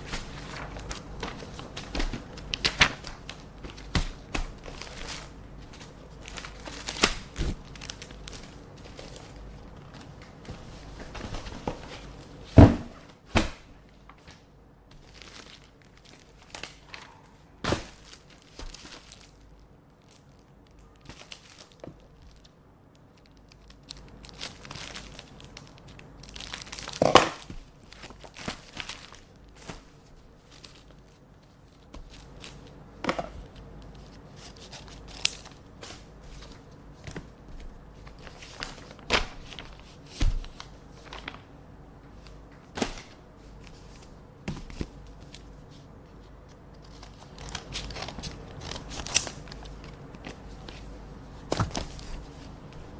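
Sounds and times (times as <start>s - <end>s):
paper rustling and tearing: 0.0s - 12.3s, 46.8s - 52.9s.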